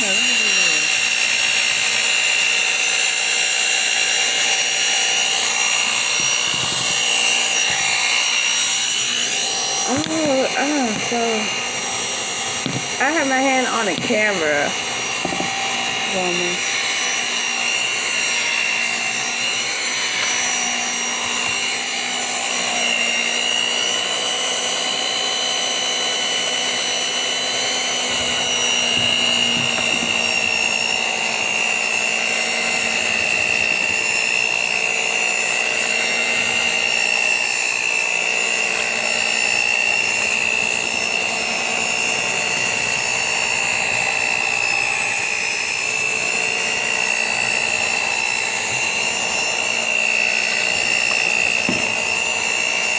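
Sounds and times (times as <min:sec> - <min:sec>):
electric mixer running: 0:00.0 - 0:52.9.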